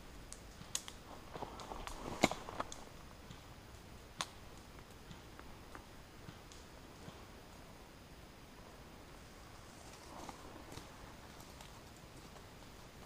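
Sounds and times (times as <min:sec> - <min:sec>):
twig snapping: 0:00.6 - 0:03.4.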